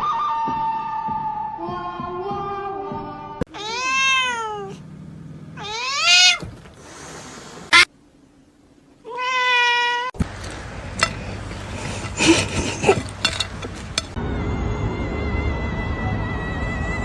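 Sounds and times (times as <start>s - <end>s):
cat meowing: 3.5s - 4.8s, 5.6s - 6.6s, 9.1s - 10.1s
rustling: 10.2s - 14.2s.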